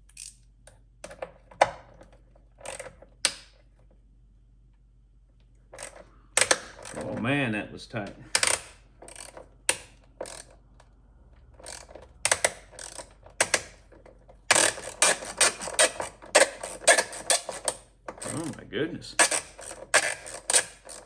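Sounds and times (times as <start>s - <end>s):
socket ratchet clicking: 0.0s - 0.5s, 2.6s - 3.5s, 5.8s - 7.0s, 8.3s - 10.6s, 11.6s - 13.8s, 14.4s - 18.5s, 19.2s - 21.0s.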